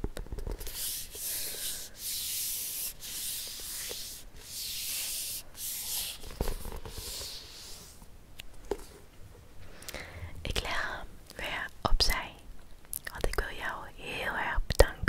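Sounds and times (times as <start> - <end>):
slow rubbing strokes: 0.6 - 8.1.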